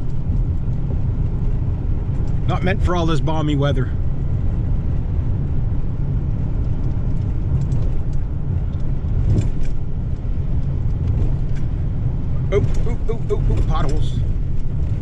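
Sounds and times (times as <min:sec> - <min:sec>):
car driving on rough road: 0:00.0 - 0:15.0
faint rattles and clicks: 0:06.6 - 0:11.8.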